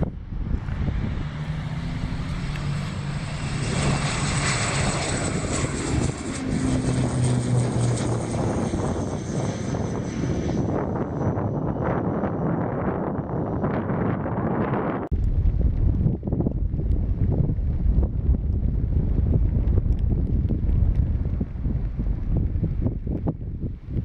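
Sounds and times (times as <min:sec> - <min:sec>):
high turbine whine: 0:00.0 - 0:23.1
turboprop engines running: 0:00.0 - 0:24.0
wind buffeting microphone: 0:00.0 - 0:24.0.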